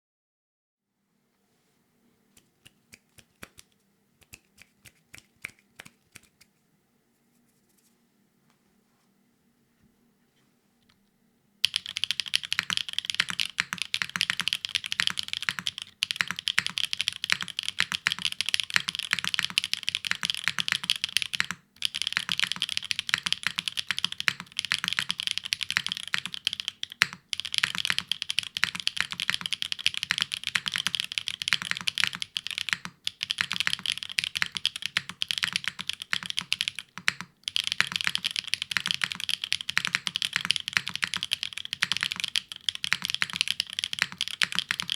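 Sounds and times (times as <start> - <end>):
mechanical keyboard typing: 11.6 - 44.9.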